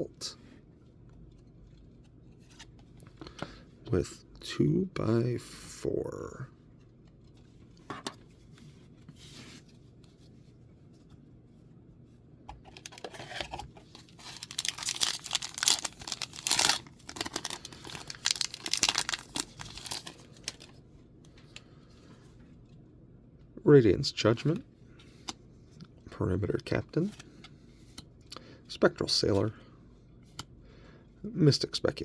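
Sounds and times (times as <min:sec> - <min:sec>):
foil wrapper tearing and crinkling: 0:14.1 - 0:20.7.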